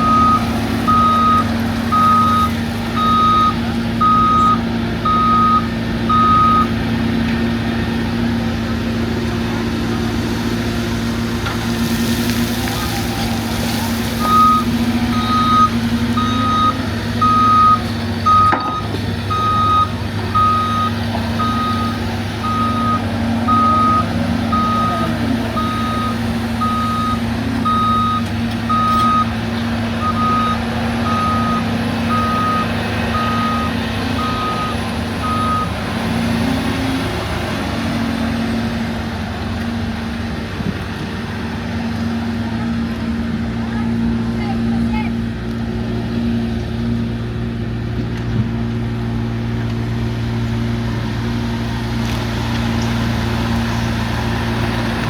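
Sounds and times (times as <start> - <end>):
travel alarm beeping: 0.0 - 6.7, 14.2 - 29.3, 30.0 - 35.7
excavator diesel engine running: 0.0 - 55.0.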